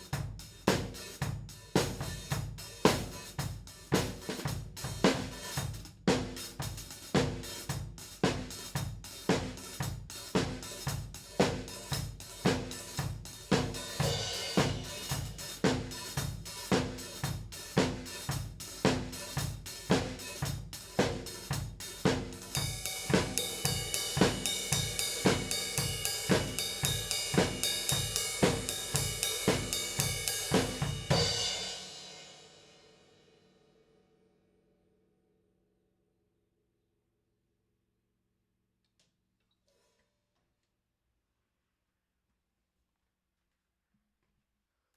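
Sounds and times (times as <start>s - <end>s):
drum kit playing a beat: 0.0s - 32.9s
bright washy cymbal ringing: 13.8s - 16.7s, 22.5s - 33.0s.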